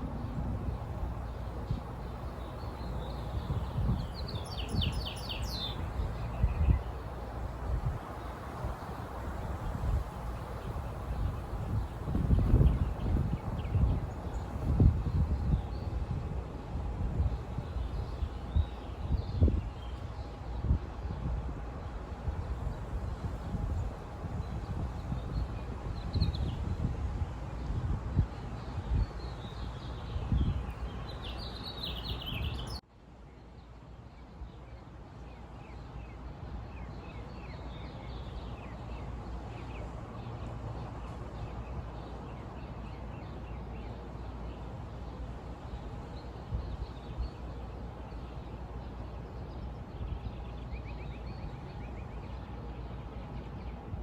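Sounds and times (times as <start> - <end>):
outdoor background noise: 0.0 - 54.0
small birds chirping: 1.2 - 9.0, 28.3 - 32.8.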